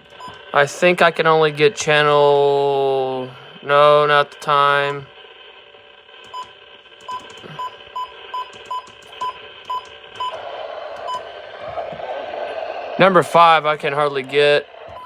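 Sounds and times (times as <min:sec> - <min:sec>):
radio hiss: 0:00.0 - 0:12.2, 0:13.0 - 0:15.0
radio button beeps: 0:06.3 - 0:10.4.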